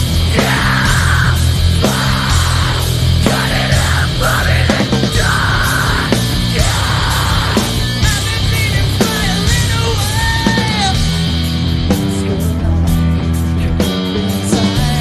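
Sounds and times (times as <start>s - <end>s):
drums: 0.0s - 15.0s
electric guitars: 0.0s - 15.0s
person yelling vocals: 0.3s - 11.0s.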